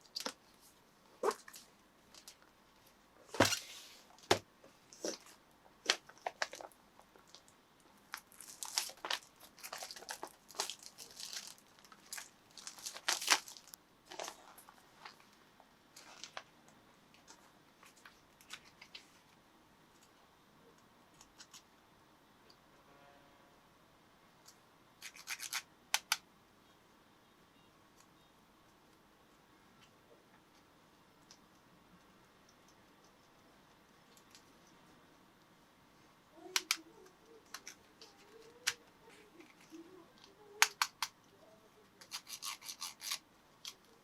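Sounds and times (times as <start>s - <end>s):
wrapping crinkling and tearing: 8.1s - 15.2s.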